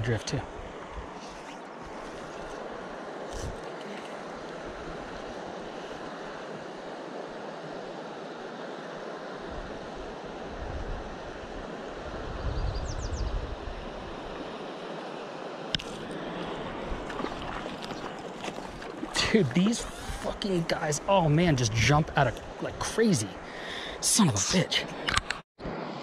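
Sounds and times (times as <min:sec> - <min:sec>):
wind buffeting microphone: 0:10.5 - 0:14.3
river water rushing: 0:13.9 - 0:25.1.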